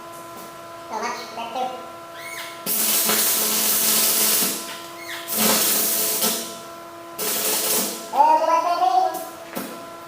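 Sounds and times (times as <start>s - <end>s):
welding arc hissing and crackling: 2.3s - 6.6s, 7.2s - 8.0s.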